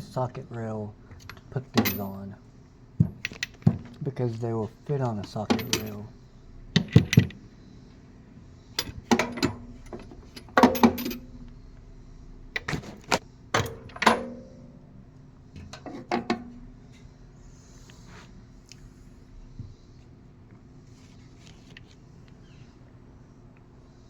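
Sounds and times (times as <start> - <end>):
metal sockets clinking together: 1.2 - 2.3, 5.3 - 6.1, 8.8 - 11.4, 13.6 - 14.4.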